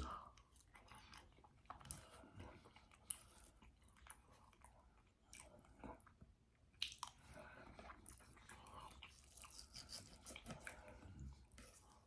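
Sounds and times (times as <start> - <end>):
chewing food: 0.0 - 12.0
mouth clicks and smacks: 6.1 - 7.2.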